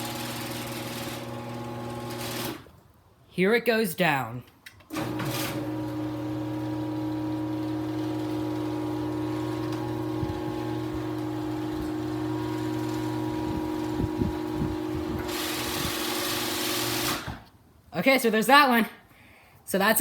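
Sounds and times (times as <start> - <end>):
garage door opener motor hum: 0.0 - 2.7, 4.9 - 17.5.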